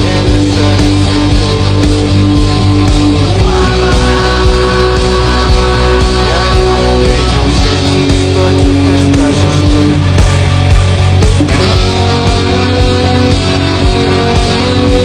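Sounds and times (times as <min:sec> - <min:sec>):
heavy steady bass: 0:00.0 - 0:15.0
lead guitar sliding notes: 0:00.0 - 0:15.0.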